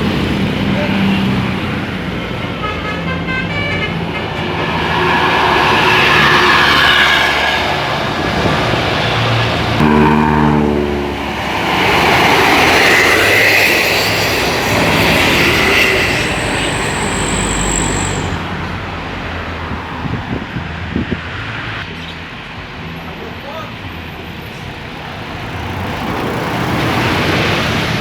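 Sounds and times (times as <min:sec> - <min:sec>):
bus passing at speed: 0:00.0 - 0:28.0
bus horn chord: 0:02.6 - 0:04.6, 0:09.8 - 0:11.4
thin high whine: 0:13.0 - 0:18.4.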